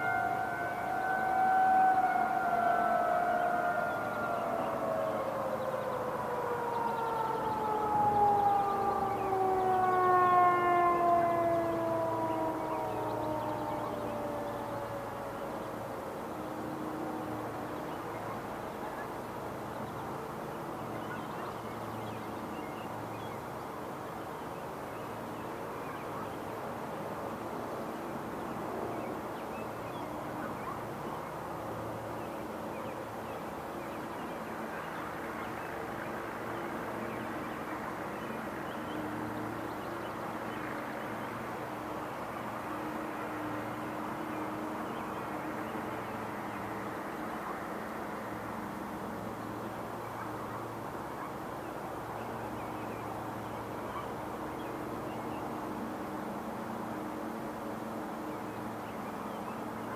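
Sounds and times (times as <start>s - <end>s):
warning sirens winding down: 0.0s - 18.6s
outdoor background hum: 0.0s - 59.9s.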